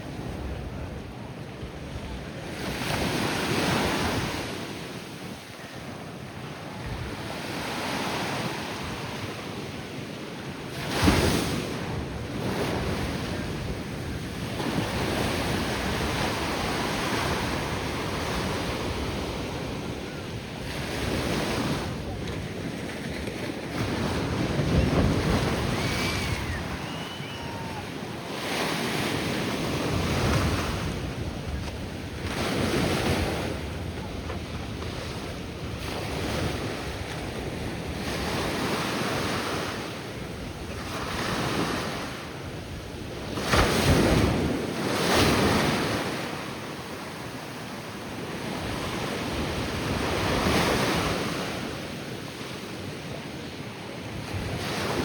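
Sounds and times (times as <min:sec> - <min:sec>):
ocean surf breaking: 0:00.0 - 0:52.8
wind buffeting microphone: 0:10.7 - 0:39.4.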